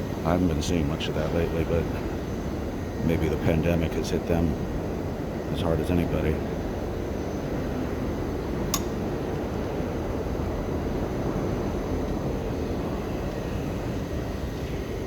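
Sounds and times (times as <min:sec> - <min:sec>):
subway station low rumble: 0:00.0 - 0:15.0
sharp click: 0:08.7 - 0:09.0.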